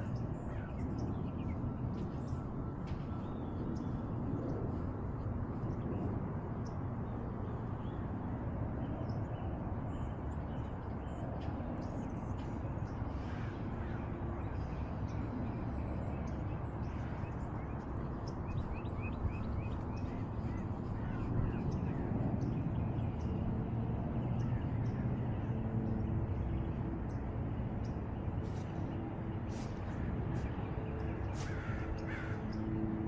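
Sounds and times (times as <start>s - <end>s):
faint bird calls: 29.5s - 33.0s
crow cawing: 31.4s - 32.6s.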